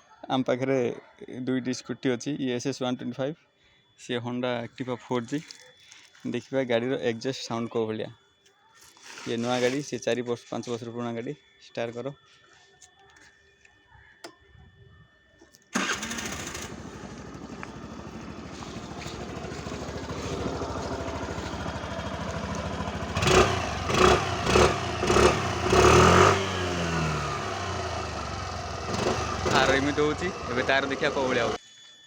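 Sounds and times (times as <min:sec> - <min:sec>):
scooter engine idling and revving: 0:15.8 - 0:31.6.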